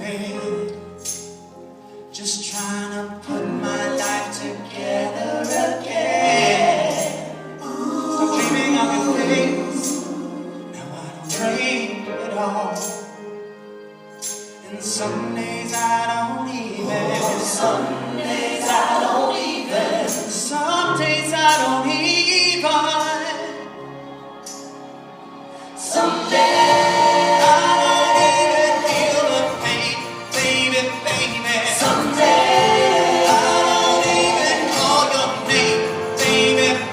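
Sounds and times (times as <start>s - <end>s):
lead singer: 0.0s - 36.9s
choir-like backing voices: 3.3s - 13.0s, 16.4s - 21.9s, 23.0s - 36.9s.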